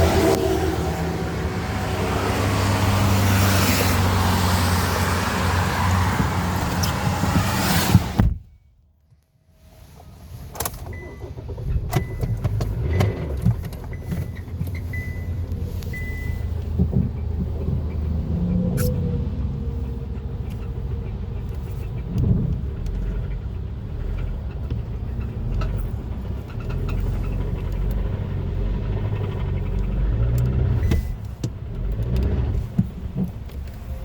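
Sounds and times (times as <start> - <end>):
engine ticks and knocks: 10.5 - 34.0.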